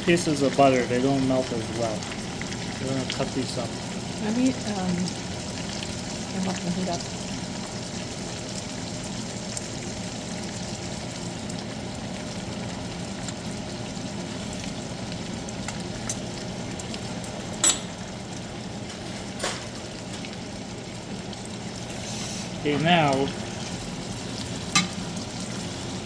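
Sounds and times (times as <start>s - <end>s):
steaks sizzling in a frying pan: 0.0s - 26.0s.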